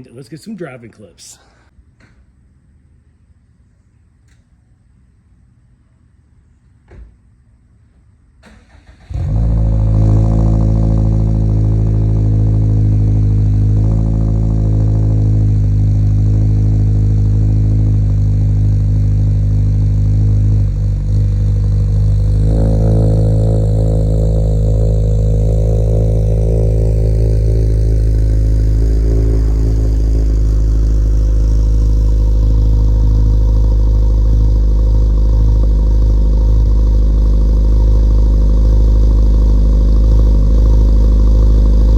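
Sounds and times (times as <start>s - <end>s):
car exhaust while driving: 8.7s - 41.9s.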